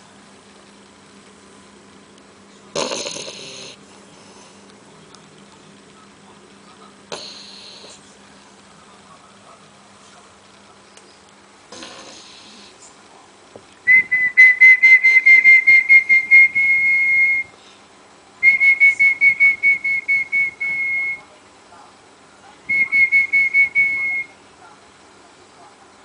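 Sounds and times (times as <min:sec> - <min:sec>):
puppy snoring with whistle: 0:02.8 - 0:03.8, 0:07.1 - 0:08.0, 0:11.7 - 0:12.8.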